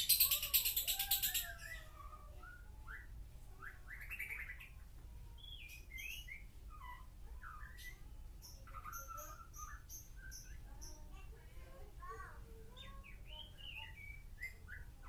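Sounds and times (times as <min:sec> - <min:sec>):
bird harsh rapid trill: 0:00.0 - 0:01.5.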